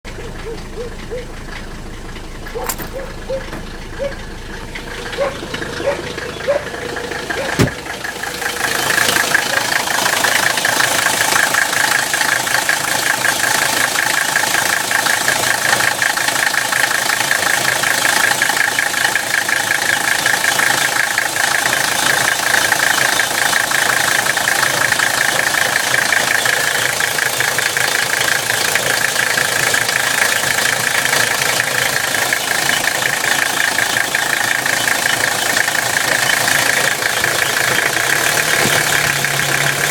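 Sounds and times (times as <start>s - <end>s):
diesel engine clattering: 0.0s - 39.9s
engine grinding sound: 0.0s - 39.9s.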